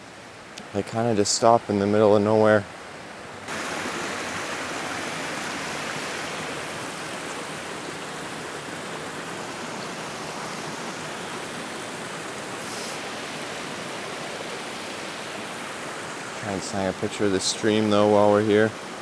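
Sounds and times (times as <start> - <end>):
stream water rushing: 0.0 - 19.0.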